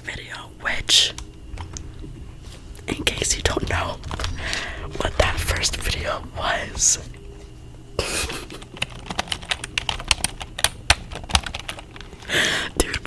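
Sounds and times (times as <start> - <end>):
fast typing on keyboard: 8.5 - 13.0.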